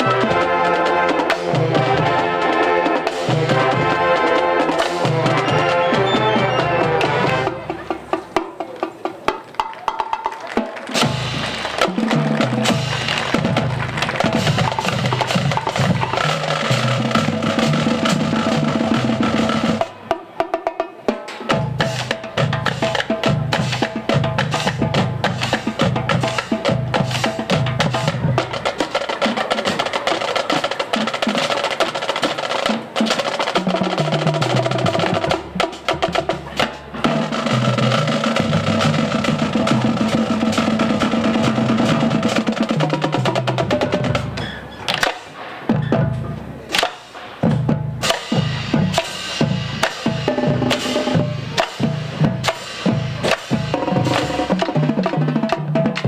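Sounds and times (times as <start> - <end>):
marching band playing: 0.0 - 56.0
rapid snare drum strokes: 0.0 - 56.0.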